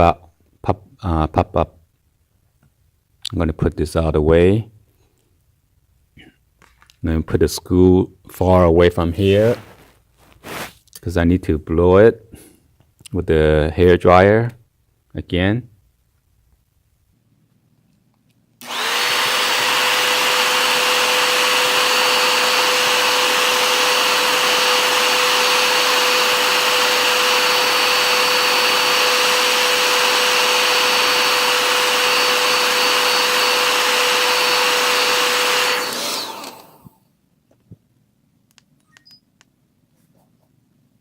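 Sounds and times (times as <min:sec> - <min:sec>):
hair dryer running: 0:18.6 - 0:37.0.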